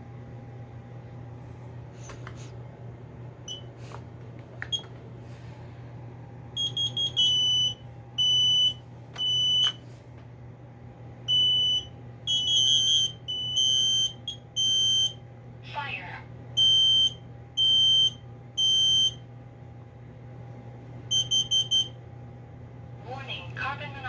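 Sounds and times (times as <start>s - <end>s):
smoke alarms beeping: 3.5s - 3.8s, 4.6s - 5.0s, 6.6s - 9.8s, 11.3s - 15.2s, 16.6s - 19.2s, 21.1s - 22.0s.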